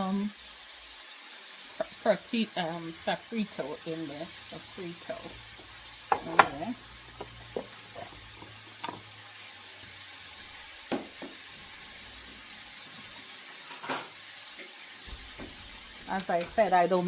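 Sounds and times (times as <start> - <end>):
food sizzling in pot: 0.0 - 17.0
knocks and scrapes in pot: 5.4 - 9.1.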